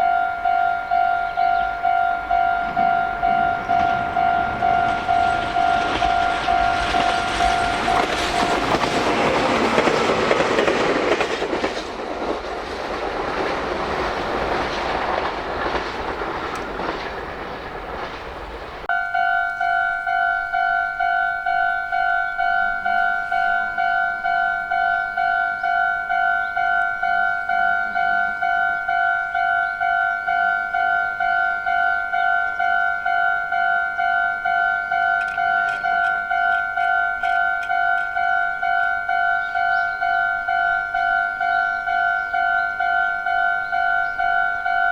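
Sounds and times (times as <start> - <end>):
level crossing warning bell: 0.0 - 9.9, 18.9 - 44.9
train rumble and wheel clatter: 0.0 - 44.9.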